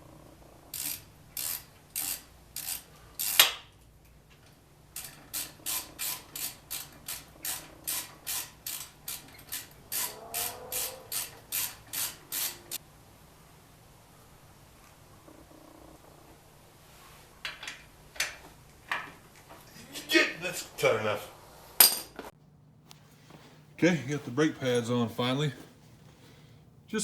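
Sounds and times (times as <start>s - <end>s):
ratchet wrench clicking: 0.7s - 3.7s, 4.9s - 10.2s, 10.8s - 12.8s.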